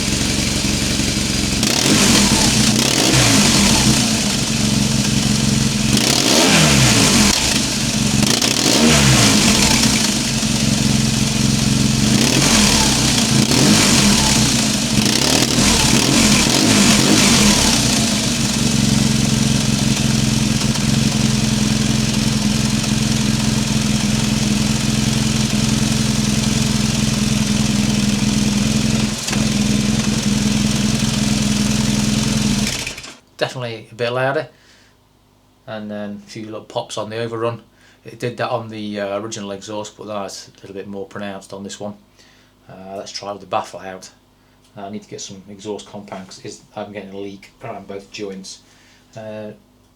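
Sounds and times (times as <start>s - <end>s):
motorcycle engine revving and idling: 0.0s - 33.2s
exhaust pops: 0.0s - 33.3s.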